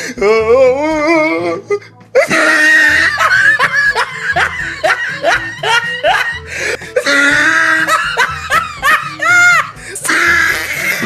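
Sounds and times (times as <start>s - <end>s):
background music with bass line: 0.0s - 11.0s
high-pitched laughter: 2.2s - 11.0s.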